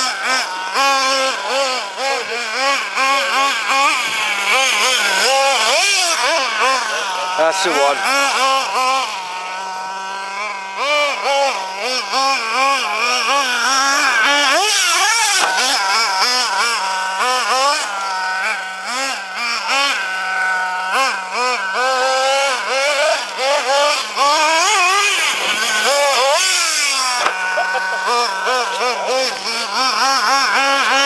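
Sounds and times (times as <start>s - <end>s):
model engine revving: 0.0s - 31.0s.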